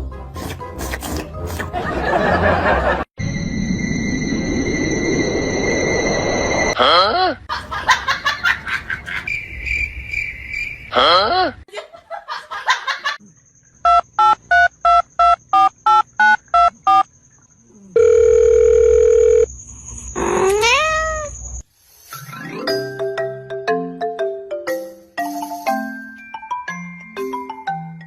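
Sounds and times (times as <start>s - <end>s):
steady dial tone: 17.9s - 19.5s.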